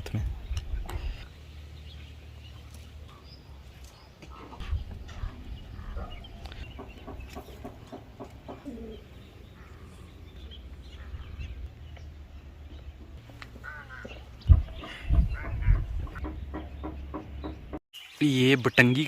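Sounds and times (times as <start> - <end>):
chickens clucking: 4.2 - 9.2, 13.0 - 17.7.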